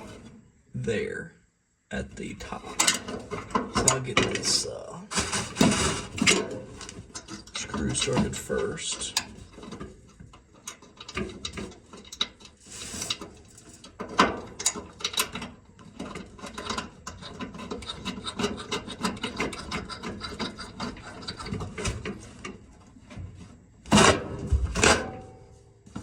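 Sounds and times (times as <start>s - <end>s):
screw scraping clicks: 9.1s - 22.5s.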